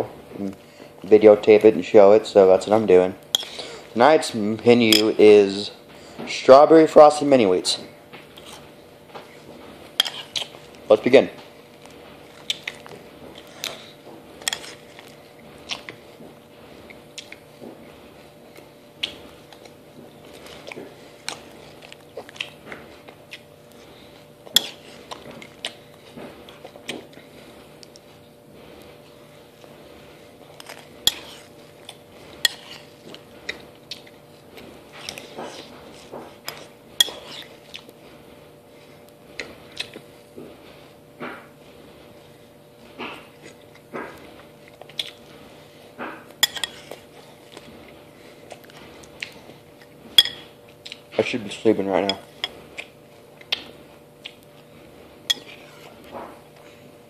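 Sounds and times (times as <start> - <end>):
faint steady hum: 0.0 - 57.0
spoon scraping a bowl: 3.3 - 3.7, 4.9 - 5.2, 10.0 - 10.5, 30.6 - 31.6, 32.4 - 33.0, 36.5 - 37.6, 46.4 - 47.1, 55.3 - 56.0
person chewing crunchy cereal: 8.3 - 11.1, 11.8 - 17.6, 18.5 - 28.1, 28.7 - 38.0, 42.2 - 50.0.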